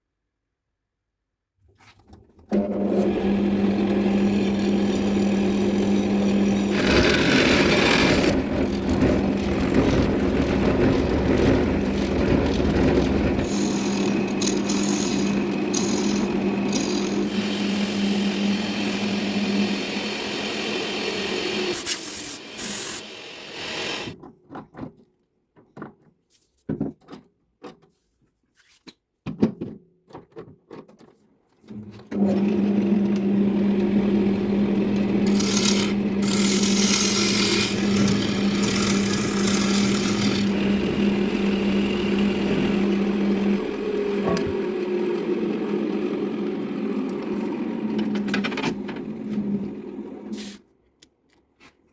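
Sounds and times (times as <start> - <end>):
wood lathe humming: 2.8 - 24.1, 32.2 - 48.3
tool scraping spinning wood: 3.3 - 24.2, 34.8 - 44.6.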